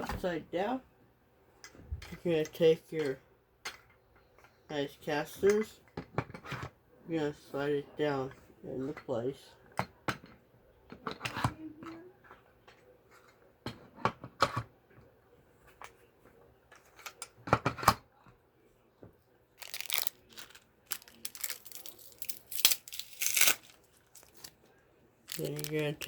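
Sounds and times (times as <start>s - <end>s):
plastic packaging crinkling and tearing: 19.6s - 24.6s, 25.3s - 26.0s.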